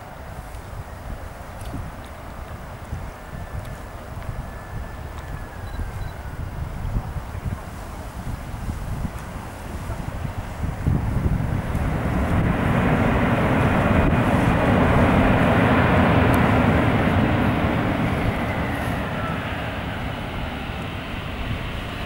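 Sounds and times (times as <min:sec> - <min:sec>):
jet engines passing by: 0:00.0 - 0:22.0.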